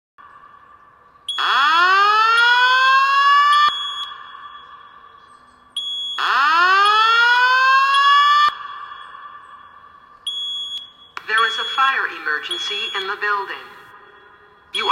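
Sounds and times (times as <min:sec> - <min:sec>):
faint steady alarm tone: 0:00.2 - 0:14.9
rising whoop alarm sweeps: 0:06.2 - 0:09.6.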